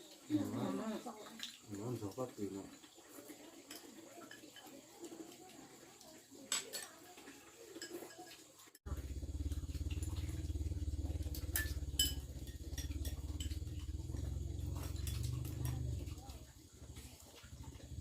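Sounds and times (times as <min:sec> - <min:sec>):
small engine running: 0:08.8 - 0:18.0.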